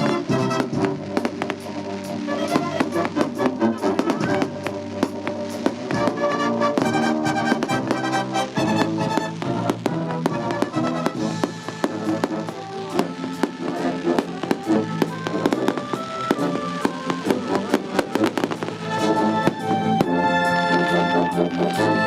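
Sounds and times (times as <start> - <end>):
fireworks bursting and crackling: 0.0 - 22.0
military band playing: 0.0 - 22.0.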